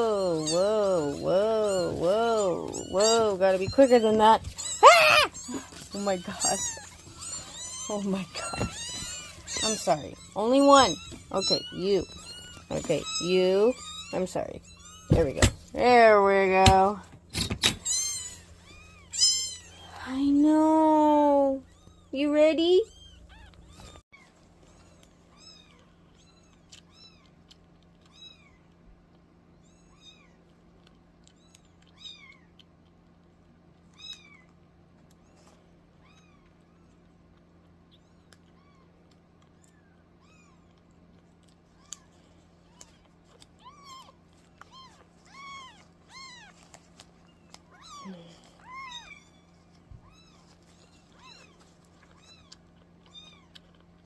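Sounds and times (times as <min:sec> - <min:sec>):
kittens mewing: 0:00.0 - 0:15.8, 0:17.6 - 0:20.0.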